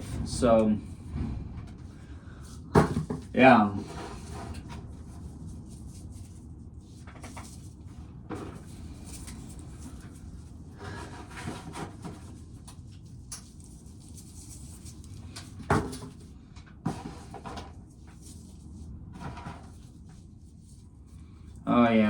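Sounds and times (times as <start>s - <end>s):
strong wind buffeting: 0.0s - 18.0s
scraping and rattling: 0.0s - 20.2s.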